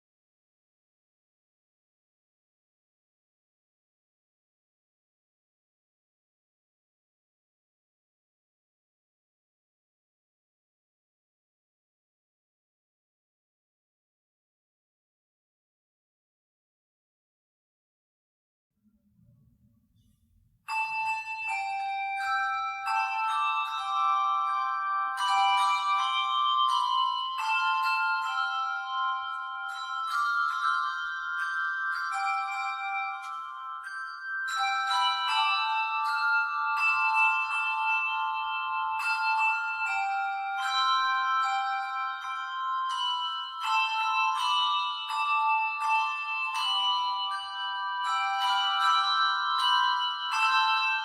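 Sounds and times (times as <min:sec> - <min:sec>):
handbell choir ringing: 0:20.7 - 0:51.0.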